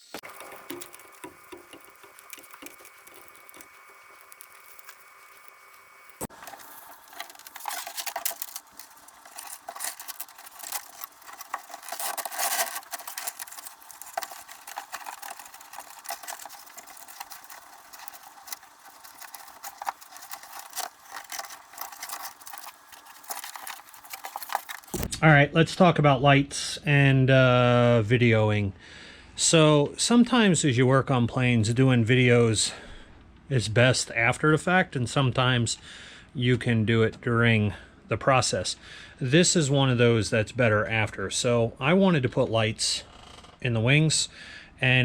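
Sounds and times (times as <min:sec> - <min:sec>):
faint steady hum: 0:00.1 - 0:25.4.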